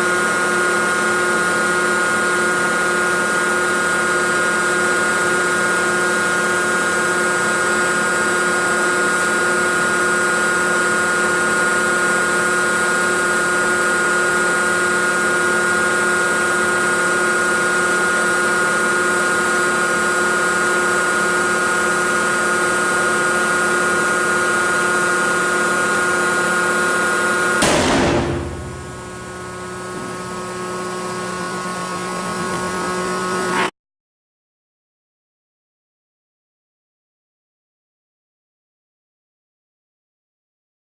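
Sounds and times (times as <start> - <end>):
tensile testing machine whine: 0.0 - 33.7
sharp bang of bar breaking: 27.6 - 29.0.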